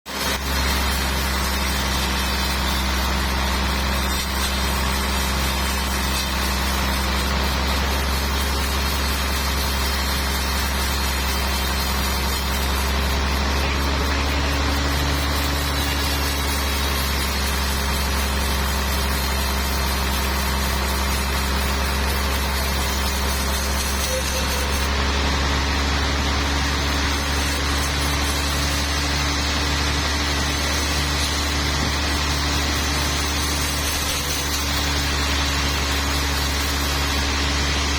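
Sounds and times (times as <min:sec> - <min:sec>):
sawmill machinery droning: 0:00.1 - 0:37.9.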